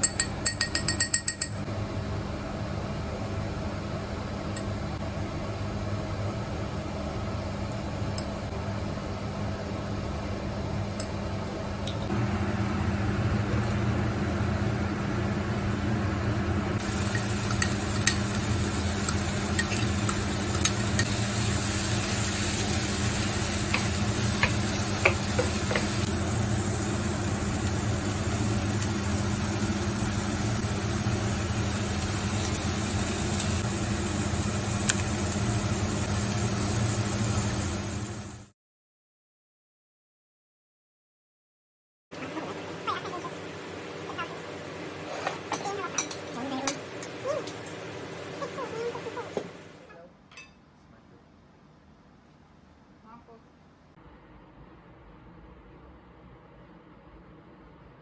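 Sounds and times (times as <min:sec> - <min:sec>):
steady low hum: 0:01.6 - 0:38.2
food sizzling in a frying pan: 0:16.8 - 0:38.5.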